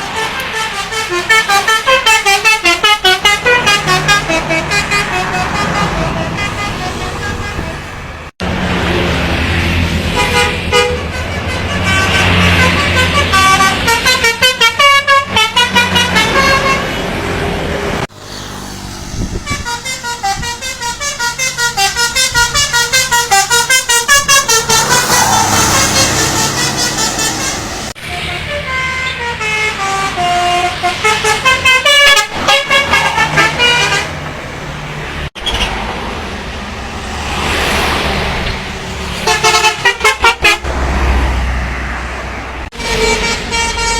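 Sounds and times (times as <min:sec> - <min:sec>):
bus engine running: 0:00.0 - 0:43.9
musical air horns beeping: 0:00.1 - 0:08.1, 0:10.1 - 0:16.9, 0:19.0 - 0:34.2, 0:39.2 - 0:40.6, 0:42.7 - 0:43.9.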